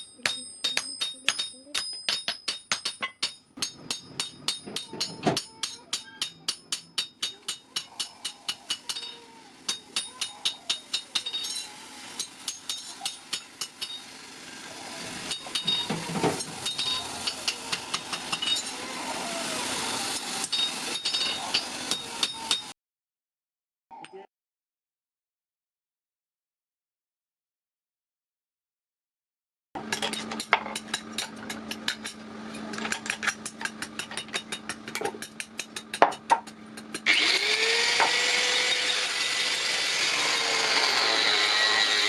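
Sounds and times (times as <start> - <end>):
hammer ringing on anvil: 0.0 - 14.2, 15.3 - 18.8, 20.4 - 22.7.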